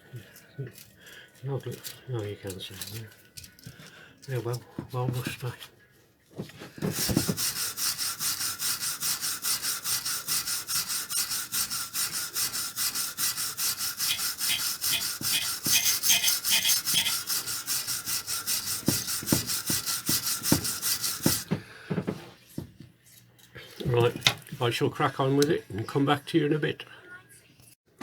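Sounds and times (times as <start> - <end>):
wire brush scrubbing metal: 6.9 - 21.4.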